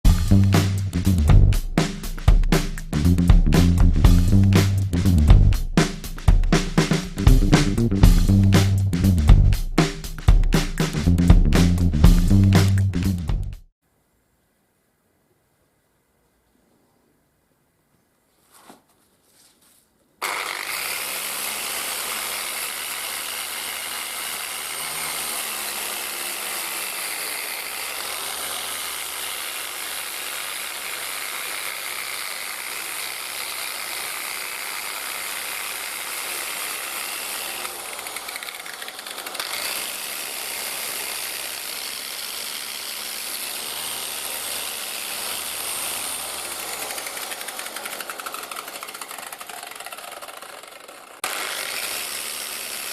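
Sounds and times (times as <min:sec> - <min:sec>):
power tool on metal: 0:20.2 - 0:52.9.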